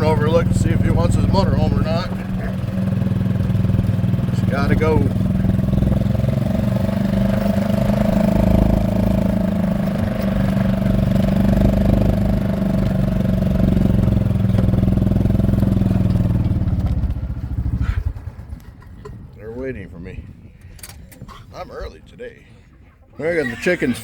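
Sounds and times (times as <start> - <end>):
vehicle engine running: 0.0 - 19.2.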